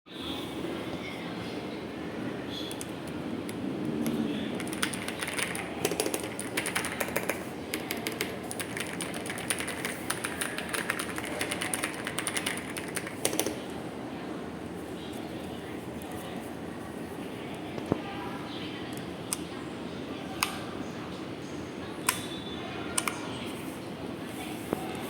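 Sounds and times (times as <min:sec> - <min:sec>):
low background noise: 0:00.1 - 0:25.0
mechanical keyboard typing: 0:04.0 - 0:13.7.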